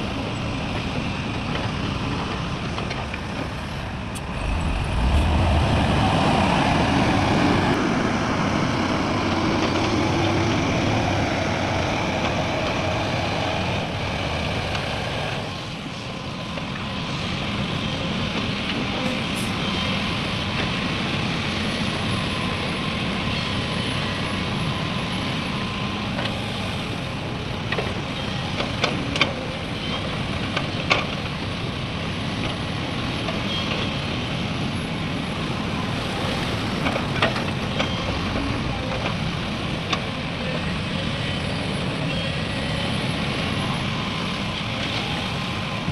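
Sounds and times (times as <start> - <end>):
diesel machinery running: 0.0 - 45.9.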